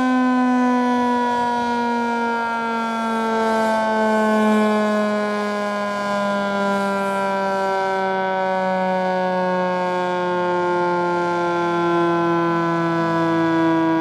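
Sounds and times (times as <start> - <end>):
two-tone warning siren: 0.0 - 14.0.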